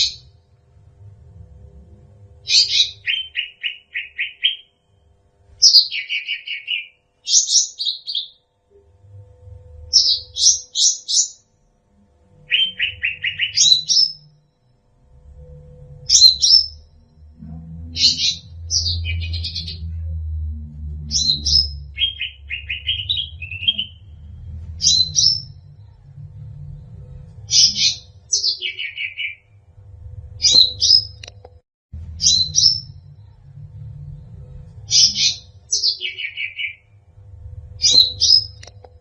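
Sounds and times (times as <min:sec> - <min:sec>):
bird chirping and trilling: 0:00.0 - 0:00.3, 0:02.4 - 0:04.8, 0:05.6 - 0:08.4, 0:09.9 - 0:11.4, 0:12.4 - 0:14.3, 0:16.0 - 0:26.0, 0:27.5 - 0:29.5, 0:30.4 - 0:31.3, 0:32.1 - 0:33.4, 0:34.8 - 0:36.9, 0:37.8 - 0:38.8
low rumble: 0:00.0 - 0:03.0, 0:14.7 - 0:28.3, 0:29.4 - 0:35.9, 0:36.8 - 0:39.0.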